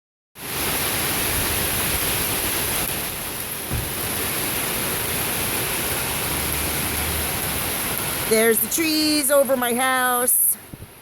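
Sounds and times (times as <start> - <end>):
hail and pouring rain: 0.4 - 11.0
low bump: 3.7 - 4.2.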